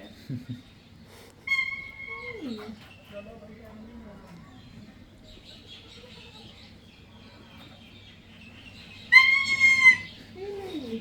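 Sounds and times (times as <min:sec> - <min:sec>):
parrot loud high call: 0:09.1 - 0:10.1.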